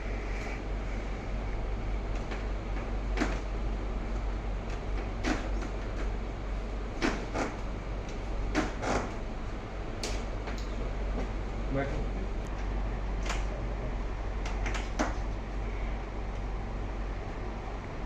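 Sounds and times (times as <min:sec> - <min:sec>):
steady background hum: 0:00.0 - 0:18.0.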